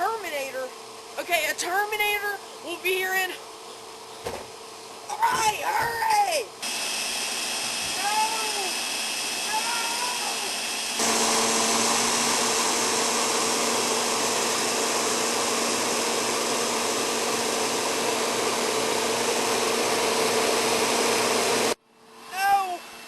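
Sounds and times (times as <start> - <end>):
vacuum cleaner motor running: 6.6 - 21.8.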